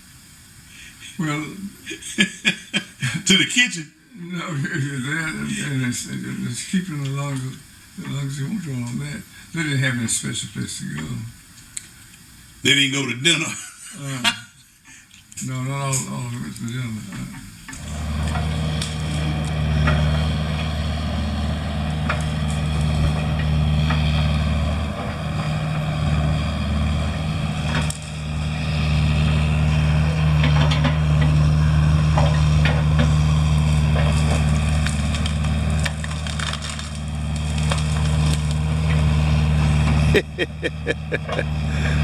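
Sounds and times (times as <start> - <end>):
heavy machine engine running: 15.8 - 42.0
brush and trees cracking: 16.2 - 40.2.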